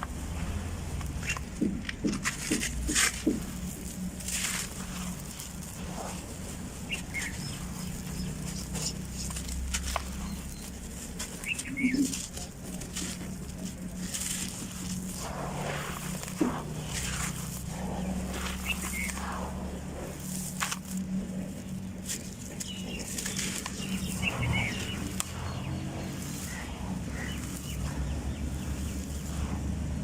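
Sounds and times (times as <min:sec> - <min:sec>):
sand-cement crumbling and crunching: 0:00.0 - 0:30.0
steady low hum: 0:00.0 - 0:30.0.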